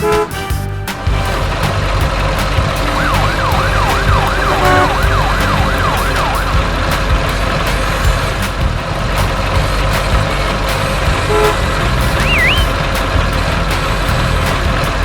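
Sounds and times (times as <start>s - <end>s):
loud steady rumble and hiss: 0.0s - 15.0s
siren yelping: 1.1s - 7.5s, 12.2s - 12.7s
short horn toot: 2.8s - 6.5s, 11.1s - 12.8s.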